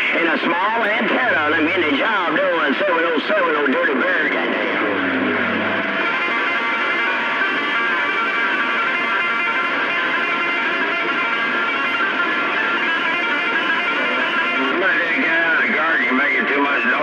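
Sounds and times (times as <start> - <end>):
strummed guitar music through radio: 0.0 - 17.0
steady overlapping tones: 0.8 - 2.6.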